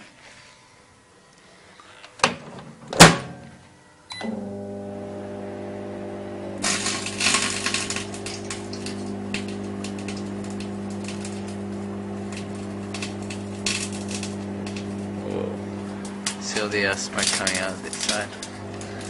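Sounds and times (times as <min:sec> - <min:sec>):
microwave oven humming: 0:03.0 - 0:19.0
discs crackling and snapping: 0:06.6 - 0:15.2, 0:15.8 - 0:19.0.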